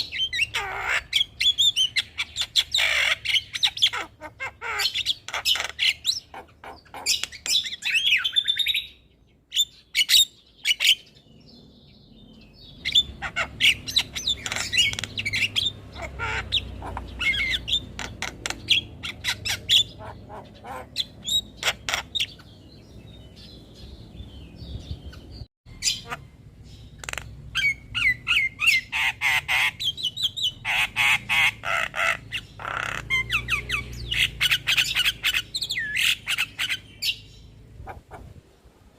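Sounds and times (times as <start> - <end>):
mynas calling and squawking: 0.0 - 8.8, 12.8 - 22.6, 25.7 - 26.3, 27.0 - 38.4.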